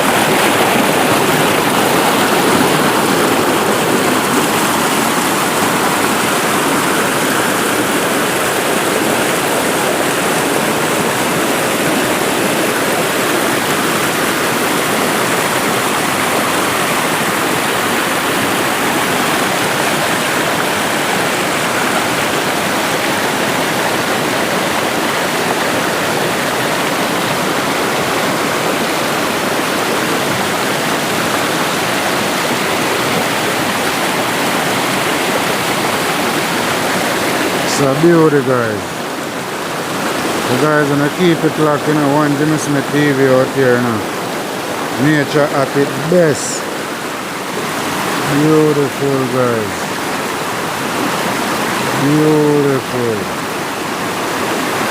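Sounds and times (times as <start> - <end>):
river water rushing: 0.0 - 54.9.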